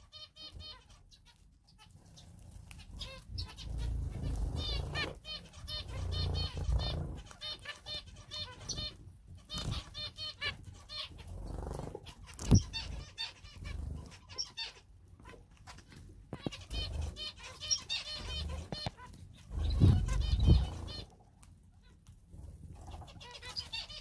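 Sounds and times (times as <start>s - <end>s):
wings fluttering: 1.8s - 7.8s, 8.5s - 14.5s, 15.3s - 21.2s
finches calling: 2.9s - 14.8s, 16.4s - 21.1s.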